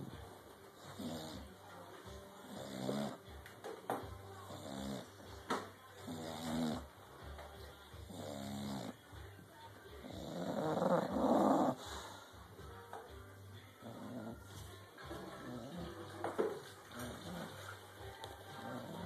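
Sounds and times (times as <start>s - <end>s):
dog snoring: 0.8s - 3.4s, 4.4s - 7.0s, 7.9s - 9.2s, 9.9s - 12.8s, 13.6s - 19.0s.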